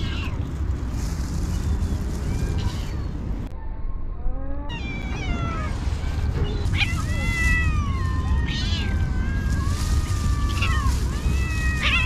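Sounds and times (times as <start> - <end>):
cats meowing: 0.0 - 0.4, 2.1 - 3.1, 4.2 - 12.0
steady low rumble: 0.0 - 12.0.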